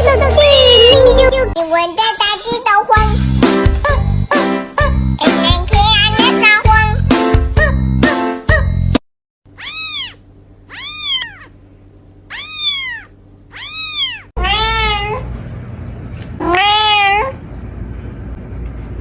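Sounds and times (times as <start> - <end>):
cat meowing: 9.5 - 11.6, 12.3 - 15.3, 16.4 - 17.4
steady background hum: 9.5 - 19.0.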